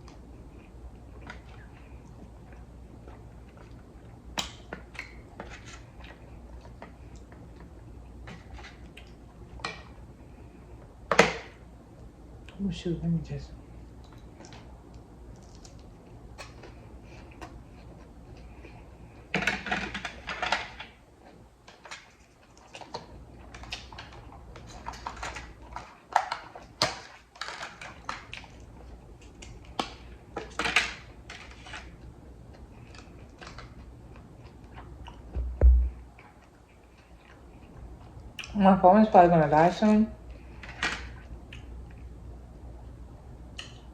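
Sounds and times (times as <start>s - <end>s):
heavy thump: 35.4s - 36.0s.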